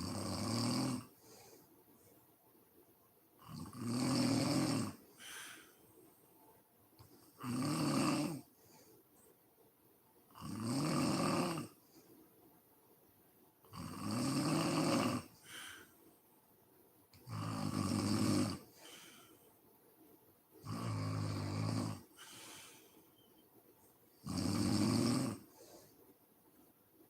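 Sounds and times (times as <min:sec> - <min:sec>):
woman snoring: 0:00.0 - 0:01.2, 0:03.4 - 0:05.6, 0:07.4 - 0:08.5, 0:10.4 - 0:11.8, 0:13.7 - 0:15.9, 0:17.2 - 0:19.3, 0:20.6 - 0:22.9, 0:24.2 - 0:25.9
soft breath: 0:01.2 - 0:02.4, 0:05.0 - 0:06.5, 0:08.5 - 0:09.5, 0:15.3 - 0:16.4, 0:18.6 - 0:20.1, 0:22.1 - 0:24.2, 0:25.4 - 0:26.7.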